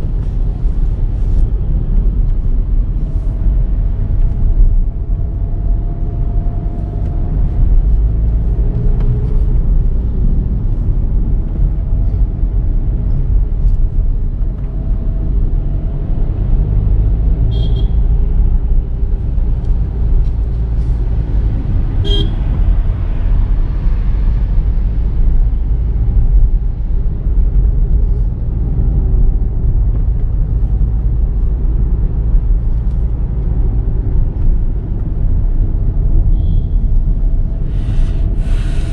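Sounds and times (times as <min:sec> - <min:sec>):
car engine rumble: 0:00.0 - 0:38.9
road noise: 0:00.0 - 0:38.9
car horn toots: 0:17.5 - 0:18.0, 0:22.0 - 0:22.5.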